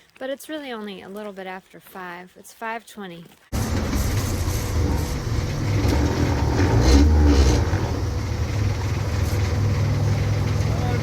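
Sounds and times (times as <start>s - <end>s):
diesel bus engine droning: 3.6s - 11.0s.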